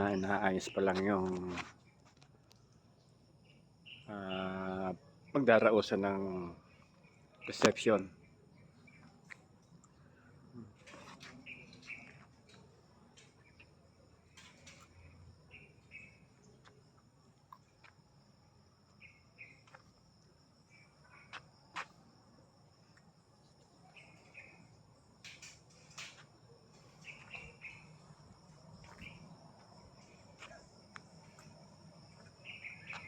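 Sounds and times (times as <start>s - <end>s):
insect drone: 0.0s - 33.0s
bird chirps: 3.4s - 5.4s, 6.7s - 9.4s, 11.0s - 12.7s, 14.6s - 16.8s, 19.0s - 19.7s, 23.8s - 24.7s, 26.8s - 28.2s, 28.8s - 29.3s, 32.0s - 33.0s.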